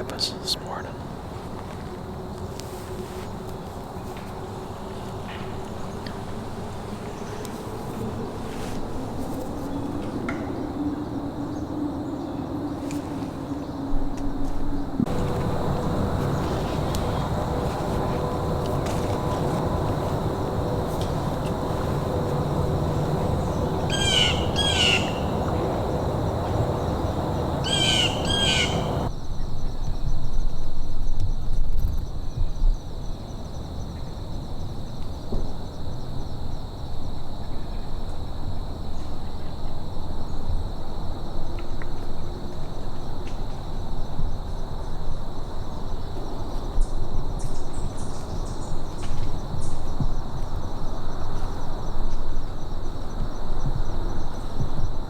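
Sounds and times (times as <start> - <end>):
steady low rumble: 13.5 - 29.1
birds chirping: 15.1 - 29.1.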